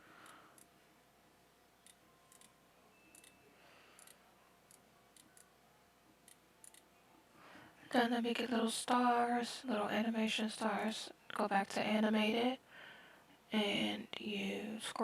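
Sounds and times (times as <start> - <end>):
computer mouse clicks: 4.0 - 5.5.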